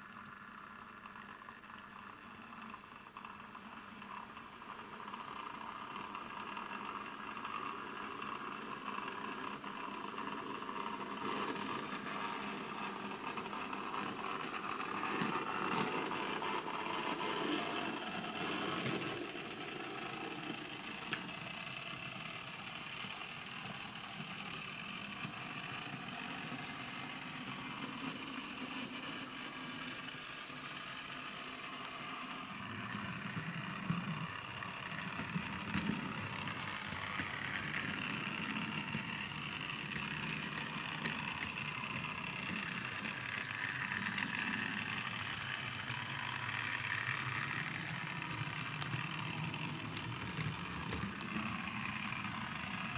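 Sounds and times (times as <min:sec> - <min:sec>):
model tram motor whirring: 0:00.0 - 0:52.9
wheels clicking on track: 0:00.0 - 0:52.9
model tram rumble: 0:03.3 - 0:52.9.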